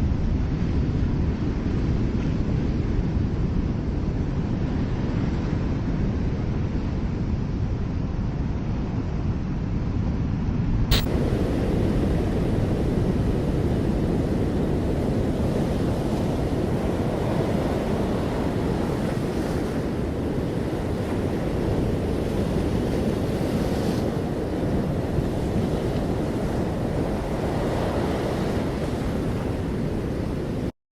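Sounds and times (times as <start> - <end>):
wind rumbling on microphone: 0.0 - 30.7
ocean surf breaking: 11.1 - 30.7.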